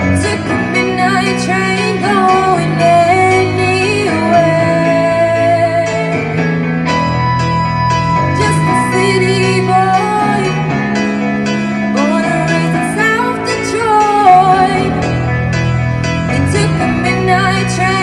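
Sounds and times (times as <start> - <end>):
woman singing with vibrato: 0.0 - 6.4, 8.2 - 10.8, 11.9 - 15.3, 16.2 - 18.0
instrumental backing with guitar: 0.0 - 18.0.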